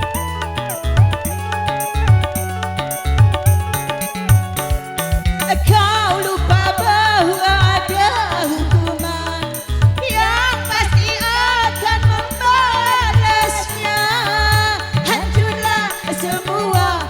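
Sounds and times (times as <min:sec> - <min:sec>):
ornamented lead melody: 0:00.0 - 0:16.9
low drum thumps and bass: 0:03.1 - 0:13.7.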